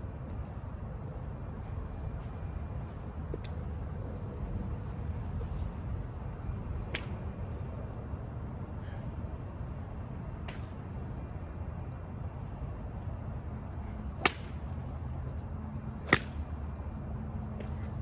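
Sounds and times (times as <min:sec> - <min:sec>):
steady low rumble: 0:00.0 - 0:18.0
golf clubs striking balls: 0:14.2 - 0:14.7, 0:16.0 - 0:16.5.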